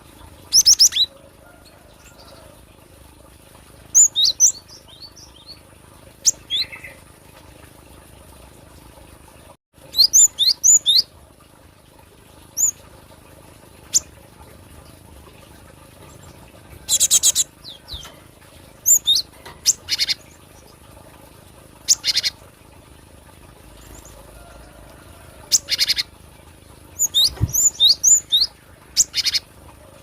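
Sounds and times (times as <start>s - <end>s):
harsh buzzy bird calls: 3.9s - 7.1s, 9.9s - 11.1s, 12.6s - 12.8s, 16.0s - 20.8s, 21.8s - 22.5s, 25.3s - 26.3s, 26.9s - 29.9s.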